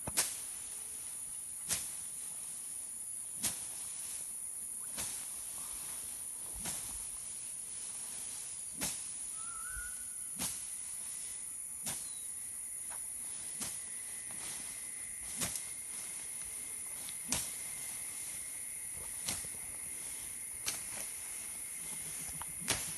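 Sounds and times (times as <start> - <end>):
high-pitched insect drone: 9.2 - 10.4
faint chirp: 9.3 - 10.3, 12.0 - 12.4.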